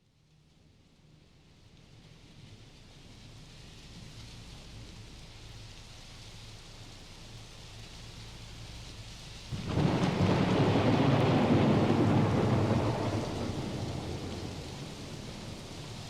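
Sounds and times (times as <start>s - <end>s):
steady rain: 0.0s - 16.0s
thunder rumbling: 9.5s - 16.0s.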